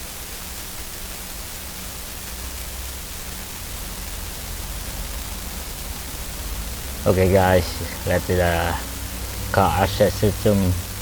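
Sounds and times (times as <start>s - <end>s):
car engine idling: 2.4s - 11.0s.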